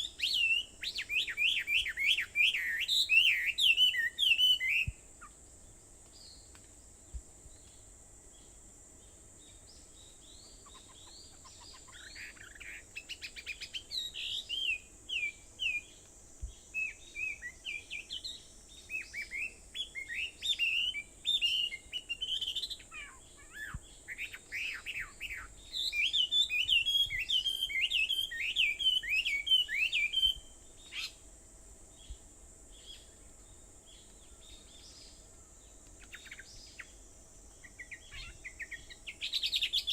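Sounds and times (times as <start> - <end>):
songbirds chirping and singing: 7.6 - 31.2.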